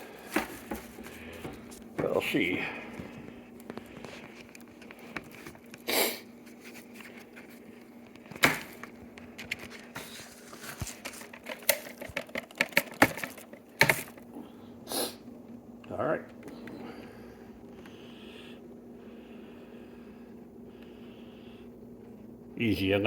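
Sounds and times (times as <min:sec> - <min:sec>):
hands handling hard objects: 0:00.0 - 0:14.4
faint steady hum: 0:00.0 - 0:23.0.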